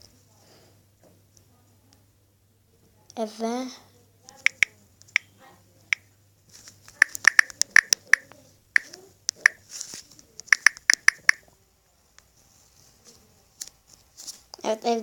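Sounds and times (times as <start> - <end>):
typing on a keyboard: 4.4 - 5.3, 7.0 - 9.6, 10.4 - 11.4.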